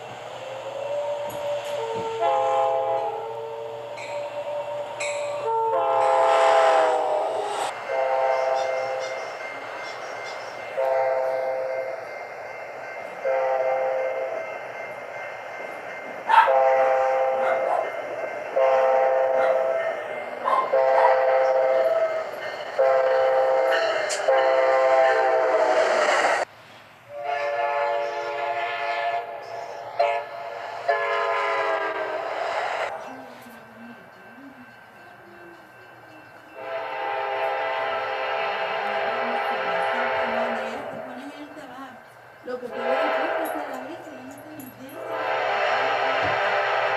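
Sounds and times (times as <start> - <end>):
locomotive air horn blasts: 0.8 - 4.5, 5.4 - 9.2, 10.8 - 11.8, 13.2 - 14.3, 16.3 - 17.8, 18.5 - 19.8, 20.4 - 22.1, 22.8 - 25.8, 27.1 - 32.4, 36.6 - 41.0, 42.7 - 43.9, 45.0 - 46.9.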